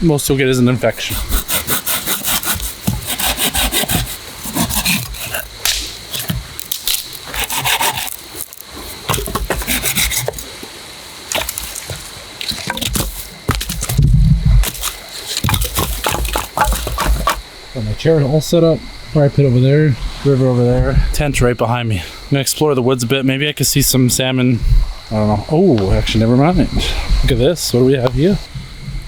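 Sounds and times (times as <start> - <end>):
branches rasping together: 0.8 - 17.5
sticks snapping: 1.3 - 17.4.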